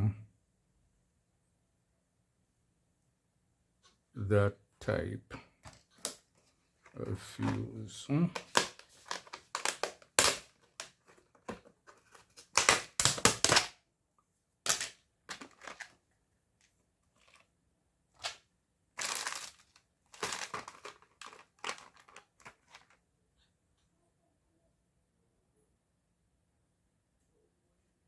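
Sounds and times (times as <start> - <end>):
crinkling and rustling: 5.6 - 13.8, 14.6 - 23.1.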